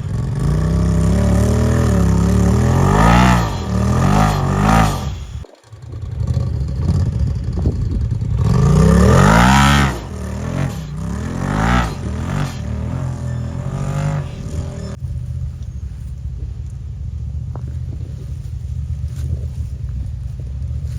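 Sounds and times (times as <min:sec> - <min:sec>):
utility vehicle engine revving: 0:00.0 - 0:20.9.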